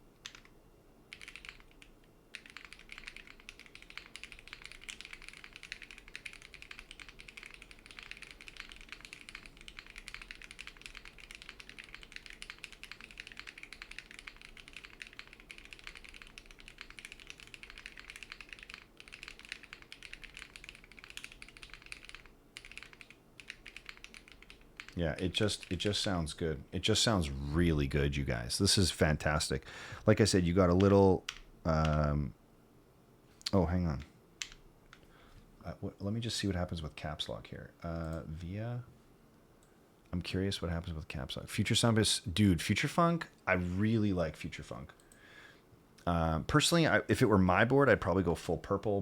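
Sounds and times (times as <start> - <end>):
fast mechanical keyboard typing: 0.2 - 0.5, 1.1 - 26.1, 30.8 - 32.0.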